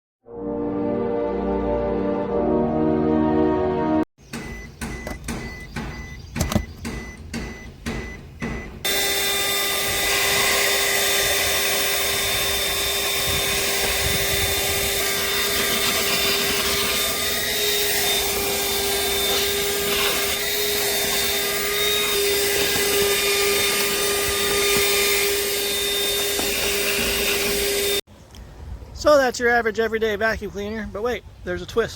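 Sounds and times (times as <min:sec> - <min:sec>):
vacuum cleaner motor whine: 0:08.9 - 0:28.0.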